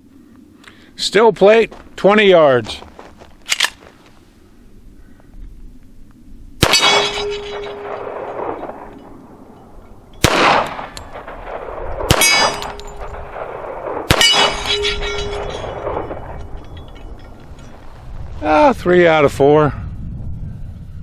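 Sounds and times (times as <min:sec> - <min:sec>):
pistol shots: 0:06.6 - 0:09.0, 0:10.2 - 0:16.5
steel plate ringing clang: 0:06.6 - 0:11.5, 0:12.1 - 0:13.4, 0:14.1 - 0:17.8.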